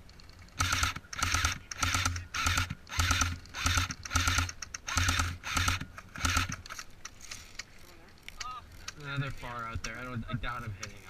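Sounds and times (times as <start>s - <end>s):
airsoft gun firing bursts: 0.6s - 6.8s.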